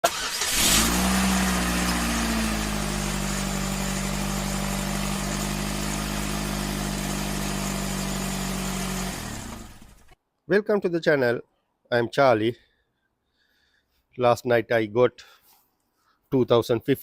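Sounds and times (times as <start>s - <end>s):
car engine starting and idling: 0.0s - 10.2s.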